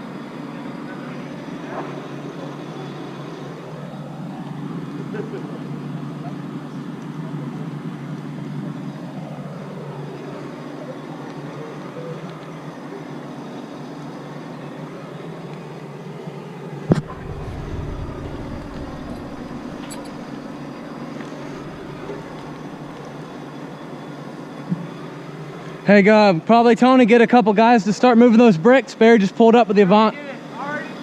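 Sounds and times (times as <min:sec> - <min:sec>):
engine running at low revs: 0:13.4 - 0:24.1.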